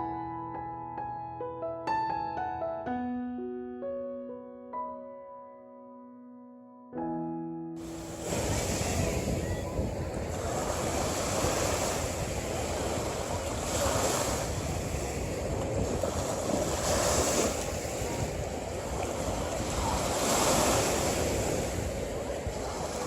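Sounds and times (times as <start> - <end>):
sea waves washing onto shore: 7.8 - 23.0
wind: 7.8 - 23.0.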